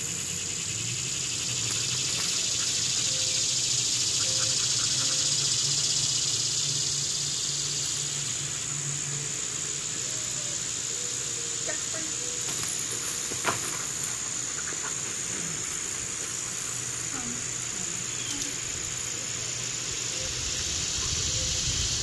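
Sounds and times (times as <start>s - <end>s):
high-pitched insect buzz: 0.0s - 22.0s
pulsing insect buzz: 0.0s - 22.0s.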